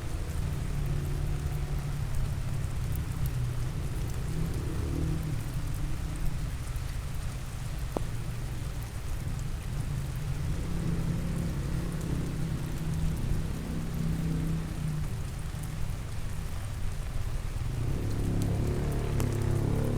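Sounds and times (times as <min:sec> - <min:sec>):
steady rain falling: 0:00.0 - 0:19.9.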